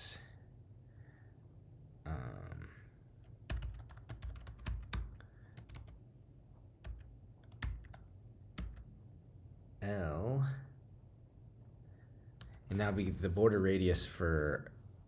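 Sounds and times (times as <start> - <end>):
keyboard typing clicks: 3.5 - 6.0, 6.9 - 8.9, 12.4 - 13.2.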